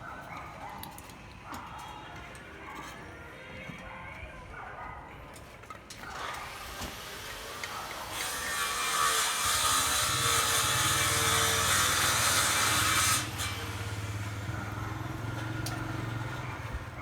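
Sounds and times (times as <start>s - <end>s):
power tool cutting: 6.2s - 16.4s.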